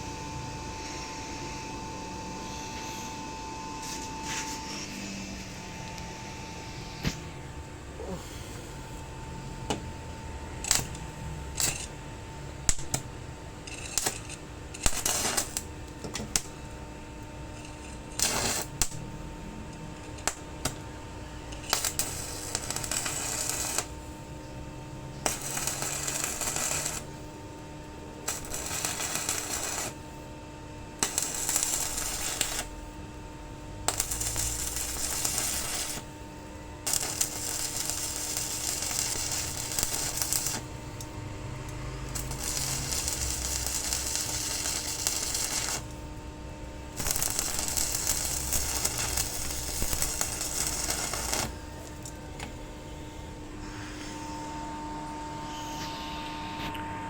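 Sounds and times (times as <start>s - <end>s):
electrical hum: 0.0s - 57.0s
crackling noise bursts: 36.9s - 40.7s, 42.0s - 45.9s, 46.9s - 51.6s.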